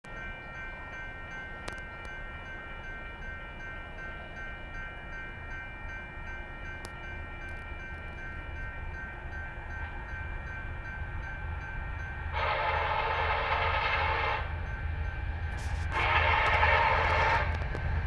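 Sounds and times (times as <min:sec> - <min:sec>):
distant locomotive horn: 0:12.3 - 0:14.8, 0:15.5 - 0:18.0.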